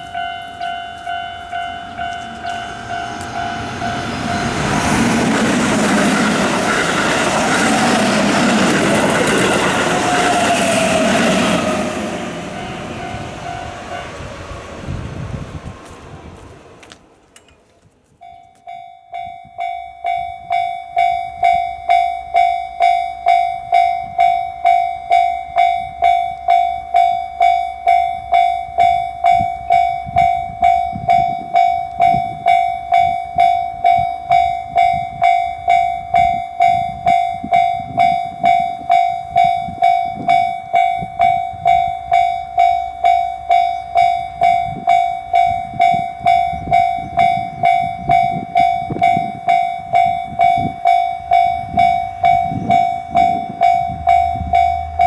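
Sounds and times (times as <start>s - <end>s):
railroad crossing bell ringing: 0.0s - 17.6s, 18.2s - 55.0s
low rumble: 53.6s - 55.0s.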